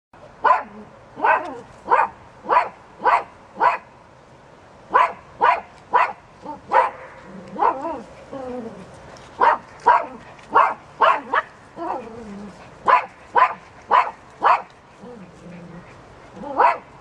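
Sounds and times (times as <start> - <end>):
dog barking: 0.4 - 3.9, 4.9 - 7.8, 9.4 - 12.0, 12.9 - 14.7, 16.4 - 16.9.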